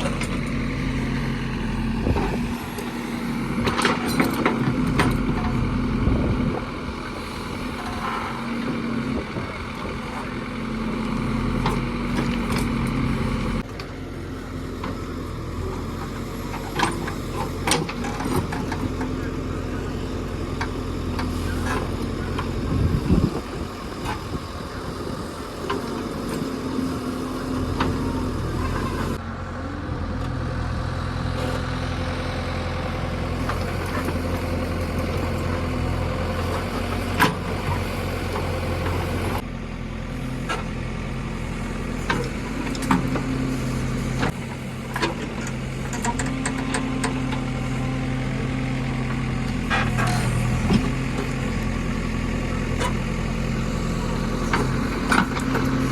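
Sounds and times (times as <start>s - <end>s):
diesel engine running: 0.0s - 55.9s.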